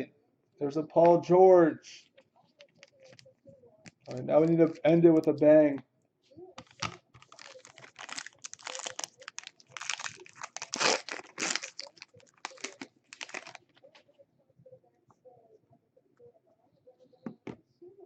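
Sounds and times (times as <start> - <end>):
plastic packaging tearing and crinkling: 6.6 - 13.7.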